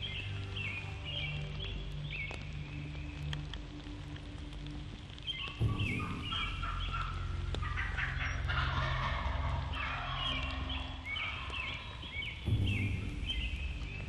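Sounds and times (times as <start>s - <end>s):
turkey yelping: 5.4s - 12.0s
turkey gobbling: 5.4s - 12.2s.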